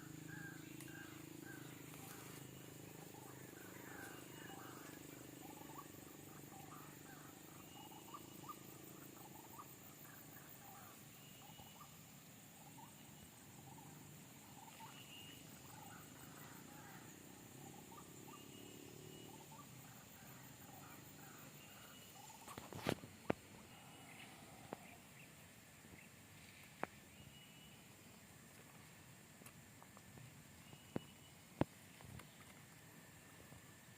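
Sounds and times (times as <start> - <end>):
waterhen calls: 0.0 - 9.8, 12.6 - 25.0.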